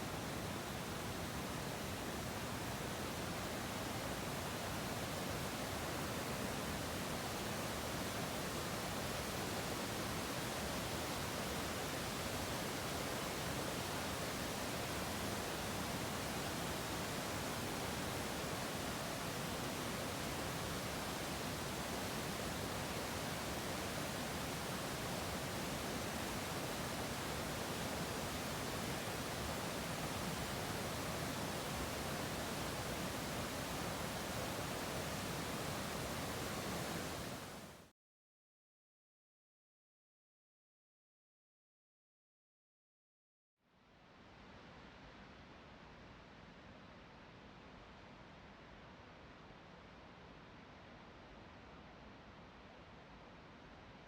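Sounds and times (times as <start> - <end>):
waterfall roaring: 30.8 - 37.7.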